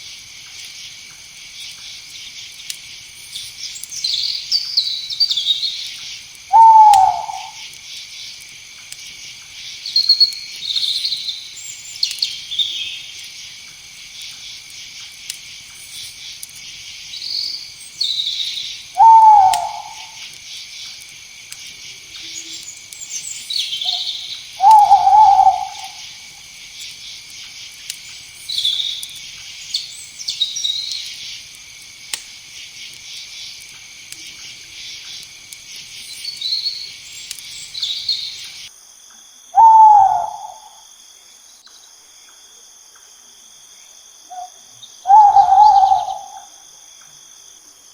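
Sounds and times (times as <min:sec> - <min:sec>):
insect chirps: 0:00.0 - 0:47.9
night insects trilling: 0:00.0 - 0:47.9
night bird calling: 0:03.4 - 0:08.5, 0:09.3 - 0:13.6, 0:14.2 - 0:38.7, 0:39.5 - 0:40.9, 0:44.3 - 0:46.6.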